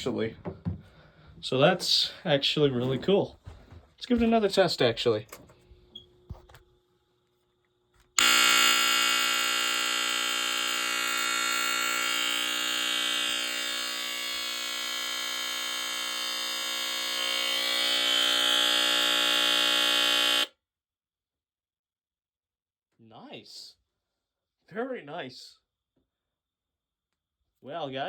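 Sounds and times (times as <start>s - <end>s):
smoke alarm horn buzzing: 8.2s - 20.5s.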